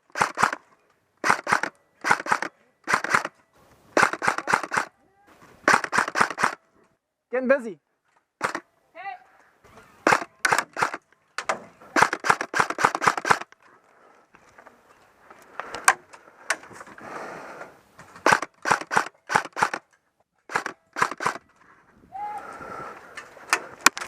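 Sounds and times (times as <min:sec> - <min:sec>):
airsoft guns firing: 0:00.0 - 0:00.6, 0:01.2 - 0:03.4, 0:04.0 - 0:04.9, 0:05.6 - 0:06.6, 0:08.4 - 0:08.6, 0:10.0 - 0:11.0, 0:11.9 - 0:13.5, 0:18.2 - 0:19.8, 0:20.5 - 0:21.4.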